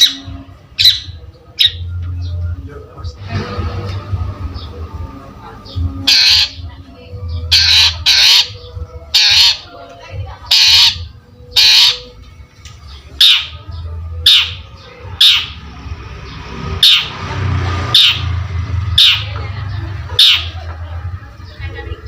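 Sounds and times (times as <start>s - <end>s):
shrike harsh scratchy calls: 6.0s - 6.6s, 7.5s - 9.7s, 10.5s - 12.1s, 13.2s - 13.5s, 14.2s - 14.6s, 15.2s - 15.6s, 16.8s - 19.3s, 20.2s - 20.6s.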